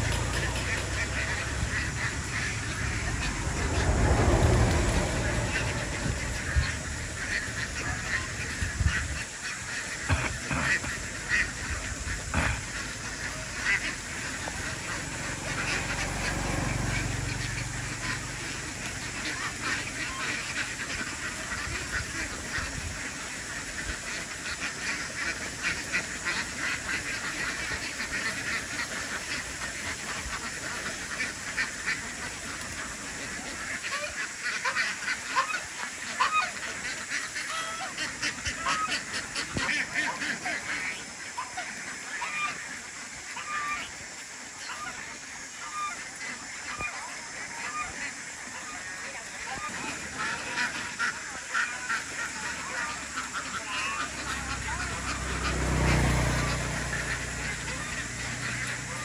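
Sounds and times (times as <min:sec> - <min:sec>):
low rumble: 0:00.0 - 0:09.2
ducks quacking: 0:00.0 - 0:59.0.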